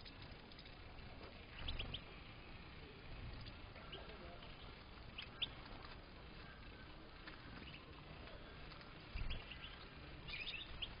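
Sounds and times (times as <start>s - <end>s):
goldfinches twittering: 9.2s - 11.0s.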